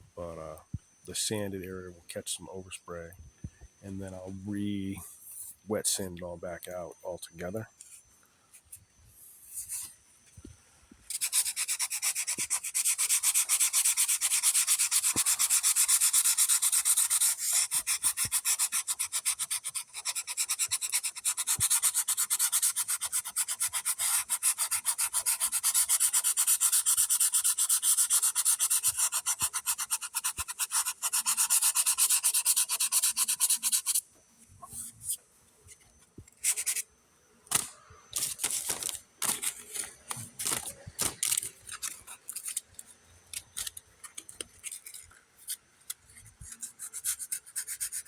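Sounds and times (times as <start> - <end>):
hand sanding back and forth: 11.1 - 34.0, 46.4 - 48.0.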